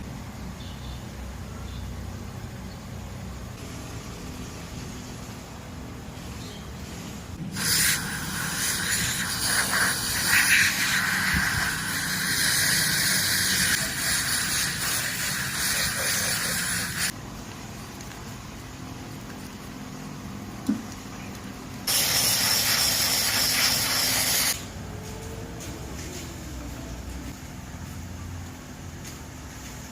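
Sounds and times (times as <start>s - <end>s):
aerosol spray hissing: 7.4s - 17.1s, 21.9s - 24.6s.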